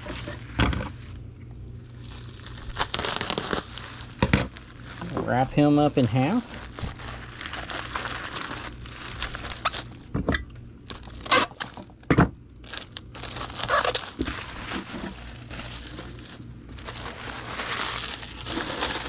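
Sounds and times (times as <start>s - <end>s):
sharp crackles and knocks: 0.0s - 1.5s, 4.0s - 5.5s, 6.6s - 7.6s
bubble wrap crinkling: 0.0s - 19.0s.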